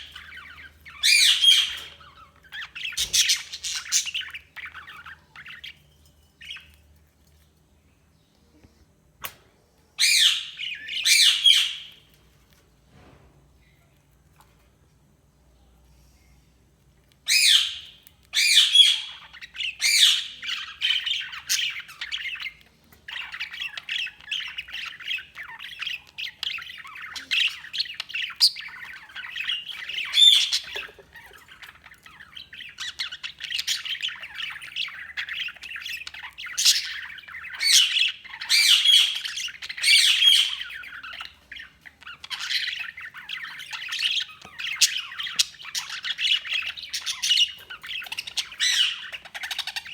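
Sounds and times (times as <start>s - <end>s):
budgerigars chirping and warbling: 0.0s - 6.9s, 10.0s - 12.2s, 17.2s - 49.9s.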